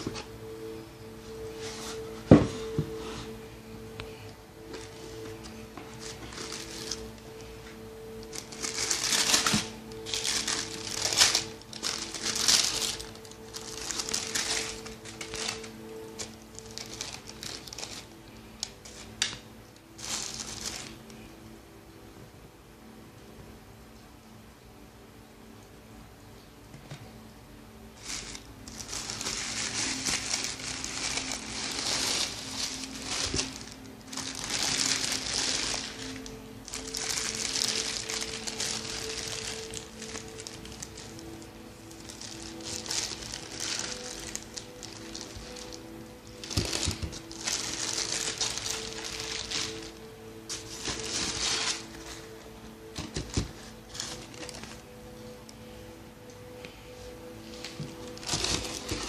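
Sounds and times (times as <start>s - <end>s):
background music: 0.0s - 59.0s
packaging crinkling: 4.0s - 21.3s, 27.9s - 55.3s, 57.3s - 59.0s.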